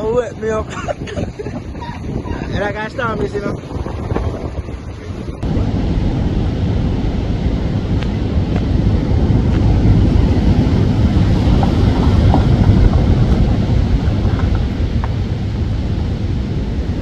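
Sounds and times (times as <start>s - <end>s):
strong wind buffeting microphone: 0.0s - 17.0s.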